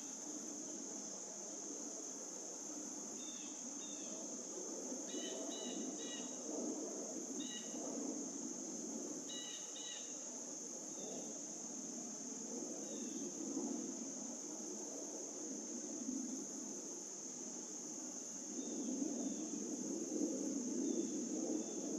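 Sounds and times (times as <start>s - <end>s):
insect chirping calls: 0.0s - 21.9s
high-pitched insect drone: 3.2s - 6.5s, 7.3s - 8.6s, 9.3s - 11.5s, 15.5s - 21.9s.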